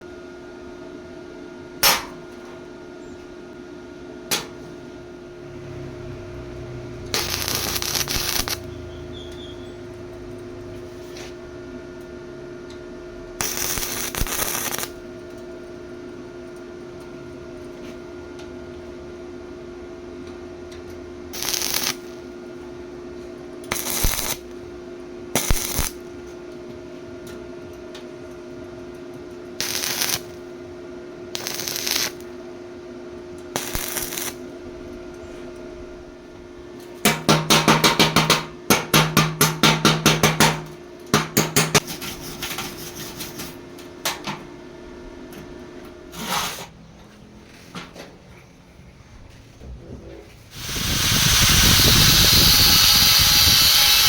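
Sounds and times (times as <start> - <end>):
machine hum: 0.4 - 37.2, 48.3 - 54.0
rasping hissing bursts: 21.4 - 22.0, 50.6 - 54.0.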